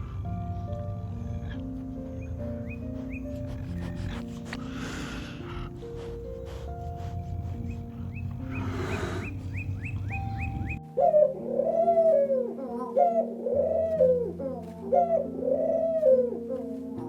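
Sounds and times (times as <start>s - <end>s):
background music: 0.0s - 17.0s
bird cooing call: 7.6s - 16.6s.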